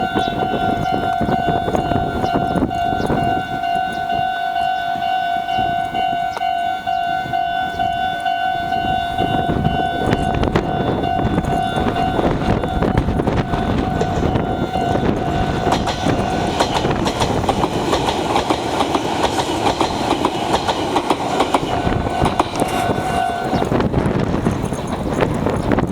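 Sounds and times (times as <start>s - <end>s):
level crossing warning bell: 0.0s - 25.3s
train wheels clacking over rail joints: 7.3s - 25.9s.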